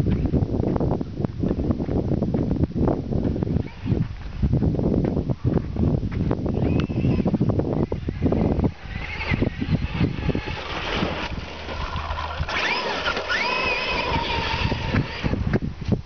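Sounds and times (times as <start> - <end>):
electric motor whining: 6.5 - 15.6.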